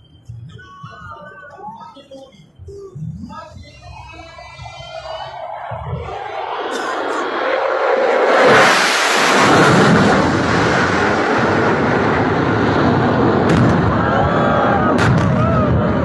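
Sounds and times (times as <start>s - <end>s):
fighter jet flying past: 4.4s - 16.0s.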